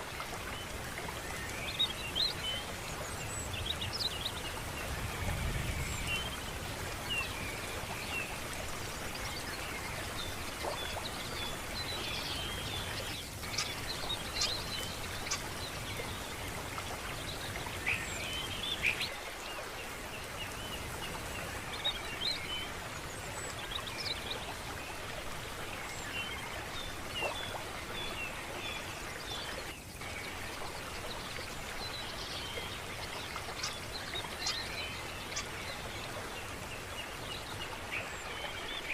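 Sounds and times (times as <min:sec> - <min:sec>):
running water rushing: 0:00.0 - 0:38.9
small birds chirping: 0:09.9 - 0:16.4.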